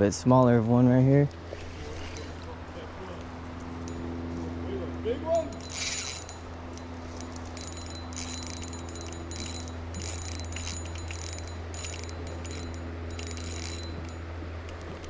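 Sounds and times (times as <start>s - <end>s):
fishing reel drag clicking: 3.8s - 4.0s, 5.4s - 14.2s.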